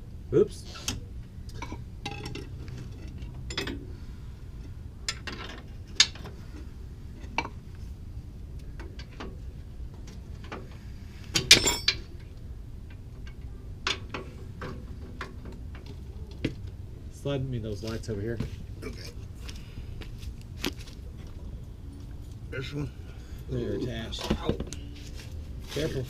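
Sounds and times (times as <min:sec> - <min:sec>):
low steady hum: 0:00.0 - 0:26.0
metal tools clinking and clanking: 0:11.4 - 0:12.1.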